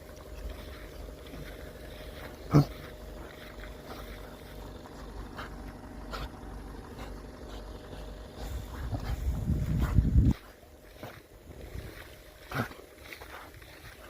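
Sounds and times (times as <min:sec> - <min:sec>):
water splashing and lapping: 0:00.0 - 0:14.0
wind rumble on microphone: 0:08.3 - 0:14.0.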